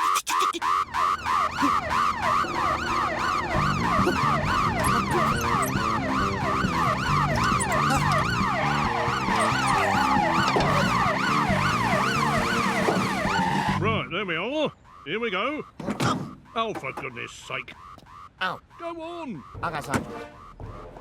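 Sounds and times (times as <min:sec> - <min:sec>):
siren fast wail: 0:00.0 - 0:21.0
music: 0:04.6 - 0:12.2.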